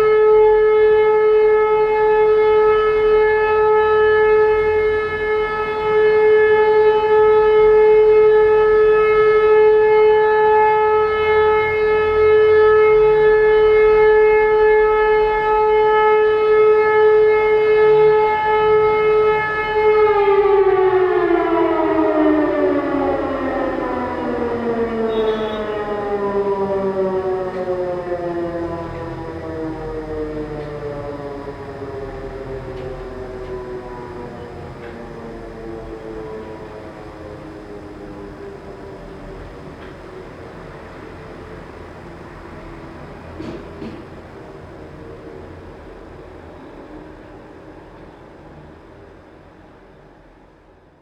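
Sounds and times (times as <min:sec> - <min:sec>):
electric siren winding down: 0:00.0 - 0:48.2.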